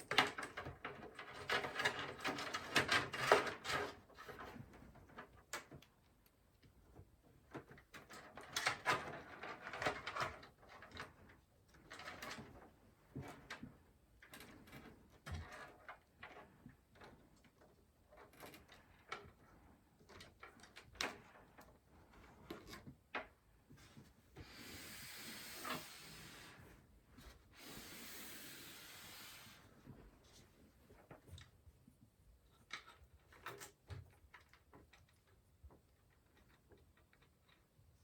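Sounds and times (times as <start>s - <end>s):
rustling hiss of cables: 23.9s - 30.6s
small clicks and knocks: 32.4s - 38.0s.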